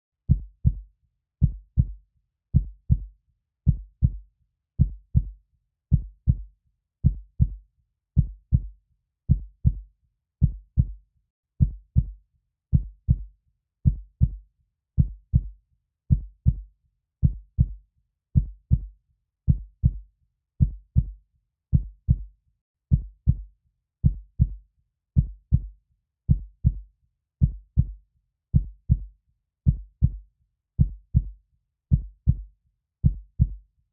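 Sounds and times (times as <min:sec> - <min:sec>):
heartbeat double thumps: 0:01.4 - 0:02.0, 0:02.6 - 0:03.1, 0:03.7 - 0:04.2, 0:04.8 - 0:06.4, 0:07.0 - 0:07.6, 0:08.2 - 0:08.7, 0:09.3 - 0:09.8, 0:10.4 - 0:11.0, 0:11.6 - 0:12.1, 0:12.7 - 0:13.3, 0:13.9 - 0:14.4, 0:15.0 - 0:15.5, 0:16.1 - 0:16.6, 0:17.2 - 0:17.8, 0:18.4 - 0:18.9, 0:19.5 - 0:20.0, 0:20.6 - 0:21.2, 0:21.8 - 0:22.3, 0:22.9 - 0:23.4, 0:24.0 - 0:24.6, 0:25.2 - 0:25.7, 0:26.3 - 0:26.8, 0:27.4 - 0:28.0, 0:28.6 - 0:29.1, 0:29.7 - 0:30.2, 0:30.8 - 0:32.4, 0:33.0 - 0:33.6.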